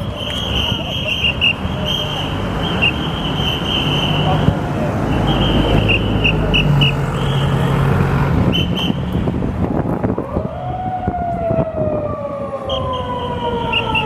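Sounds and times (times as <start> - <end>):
traffic noise: 0.0 - 14.0
emergency vehicle siren wailing: 9.8 - 14.0.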